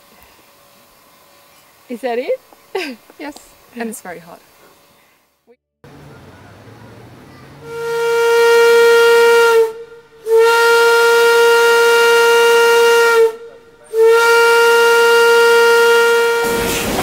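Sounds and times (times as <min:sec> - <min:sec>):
steam whistle blasts: 0:07.6 - 0:17.0.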